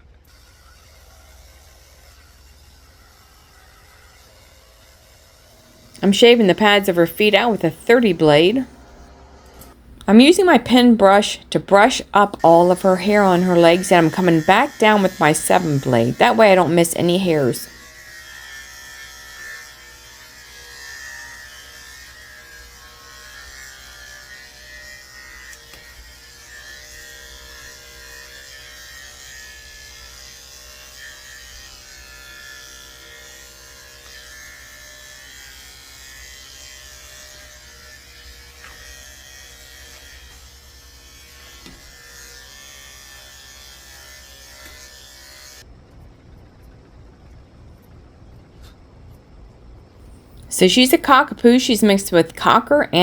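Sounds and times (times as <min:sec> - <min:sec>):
electric clippers running: 0:00.0 - 0:06.0, 0:11.9 - 0:46.0.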